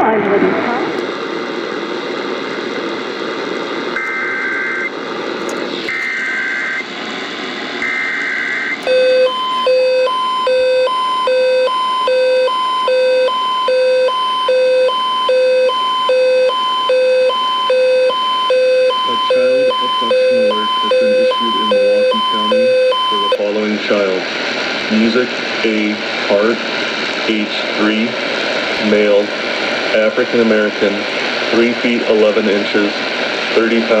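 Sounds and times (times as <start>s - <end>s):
radio hiss: 0.0s - 9.3s, 18.3s - 34.0s
screeching data bursts: 7.8s - 23.4s
pulsing two-tone alert beep: 8.9s - 23.4s.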